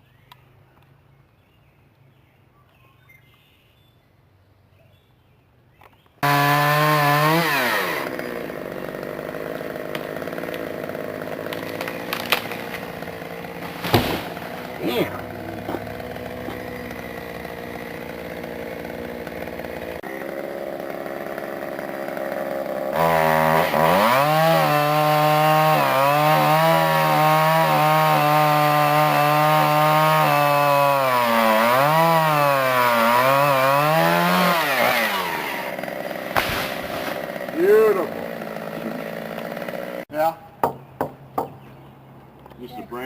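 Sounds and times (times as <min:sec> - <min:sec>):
chainsaw cutting branch: 0:06.2 - 0:40.1.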